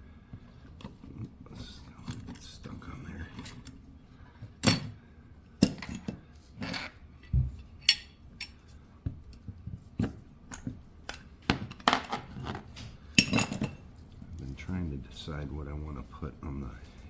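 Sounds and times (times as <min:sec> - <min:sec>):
metallic knocks and clinks: 0:13.1 - 0:13.8.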